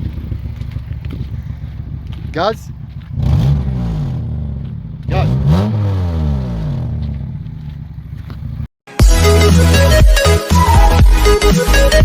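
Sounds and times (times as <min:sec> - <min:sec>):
car engine revving: 0:01.0 - 0:08.7
music: 0:08.9 - 0:12.0.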